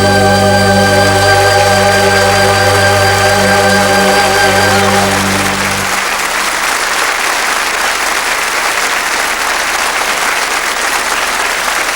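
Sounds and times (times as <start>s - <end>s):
held musical chord: 0.0s - 6.5s
audience applauding: 0.0s - 11.9s.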